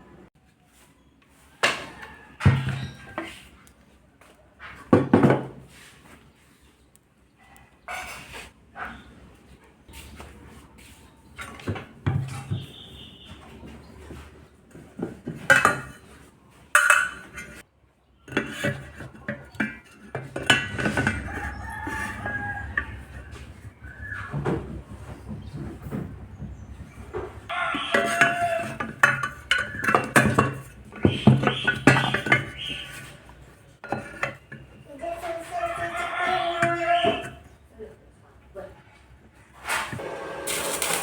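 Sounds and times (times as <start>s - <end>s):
rooster crowing: 1.8s - 3.0s, 20.9s - 24.2s, 27.5s - 28.8s
metal tools clinking and clattering: 18.3s - 23.0s, 27.9s - 33.0s.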